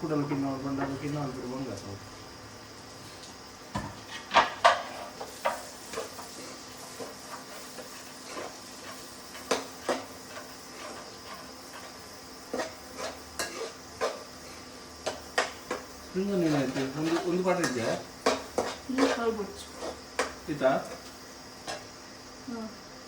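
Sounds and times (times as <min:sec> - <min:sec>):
food sizzling in butter: 0:00.0 - 0:23.0
utensil scraping and knocking pan: 0:04.0 - 0:14.3, 0:15.0 - 0:21.9.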